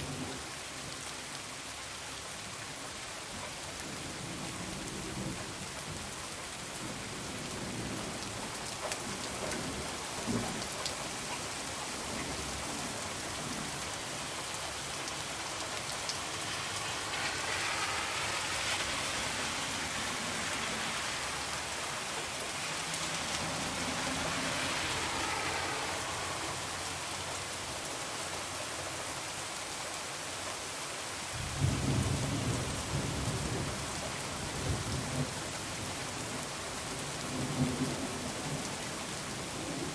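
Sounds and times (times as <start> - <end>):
heavy rain falling: 0.0 - 39.9
low thunder rumbling: 31.4 - 33.8.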